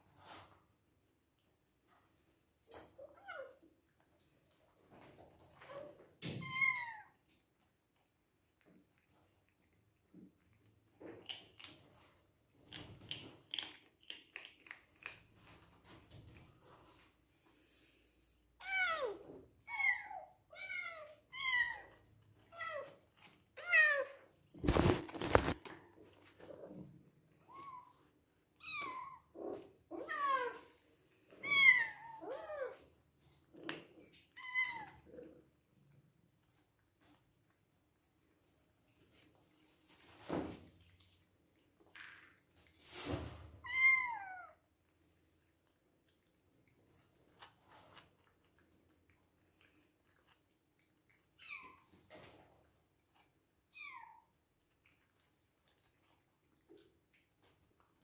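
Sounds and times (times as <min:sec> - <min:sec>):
kittens chewing: 0:07.6 - 0:17.8, 0:21.0 - 0:42.8, 0:44.7 - 0:58.0.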